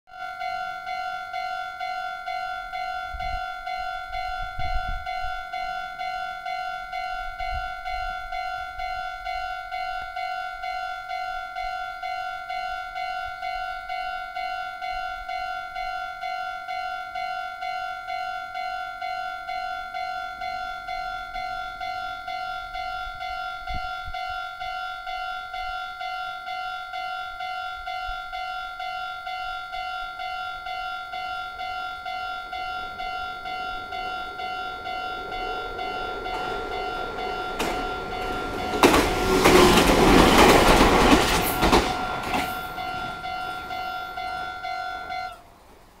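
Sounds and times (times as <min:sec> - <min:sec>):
level-crossing alarm clanging: 0:00.1 - 0:45.5
train passing: 0:17.2 - 0:46.0.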